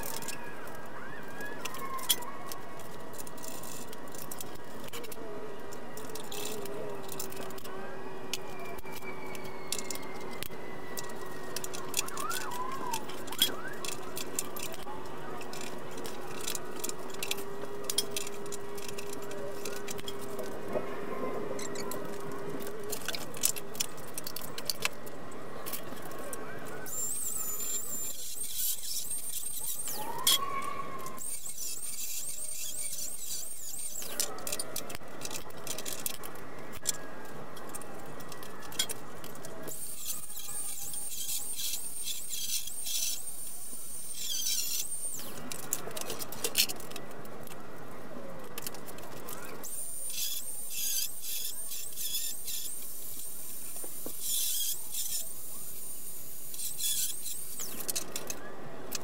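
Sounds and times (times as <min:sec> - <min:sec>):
scattered clicks: 0:00.0 - 0:20.9, 0:21.5 - 0:59.0
high chirping squeaks: 0:08.4 - 0:20.4, 0:26.8 - 0:34.4, 0:39.6 - 0:45.5, 0:54.2 - 0:58.1.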